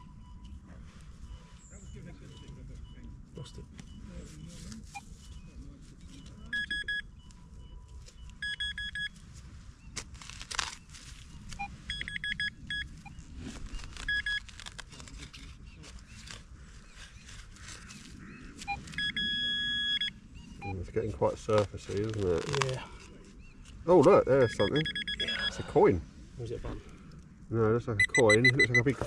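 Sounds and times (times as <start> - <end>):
metal detector bleeping: 6.1 - 9.2, 11.6 - 13.2, 13.9 - 14.5, 18.7 - 20.8, 24.4 - 25.7, 28.0 - 29.0
soil scraping: 13.0 - 19.1, 21.3 - 24.2.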